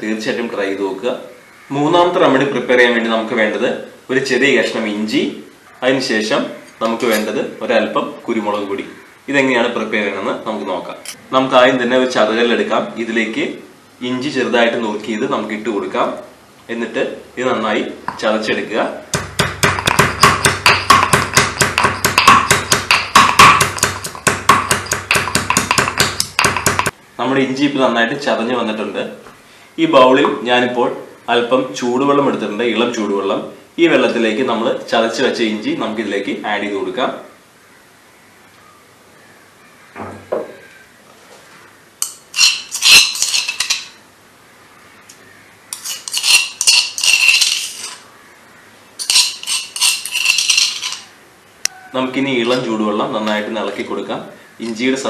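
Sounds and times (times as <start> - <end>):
stone crusher pounding ginger: 19.1 - 27.0
spoon scraping a dish: 42.0 - 43.9, 45.7 - 48.1, 49.0 - 51.1.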